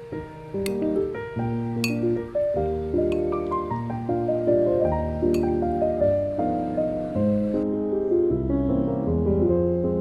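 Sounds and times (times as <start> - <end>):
slow keyboard melody: 0.0 - 10.0.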